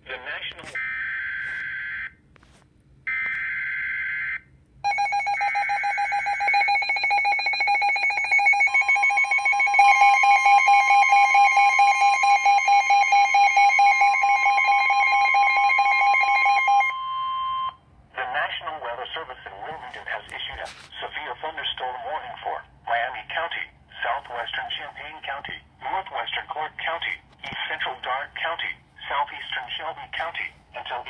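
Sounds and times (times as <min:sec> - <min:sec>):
electronic attention alarm tone: 0:04.9 - 0:17.8.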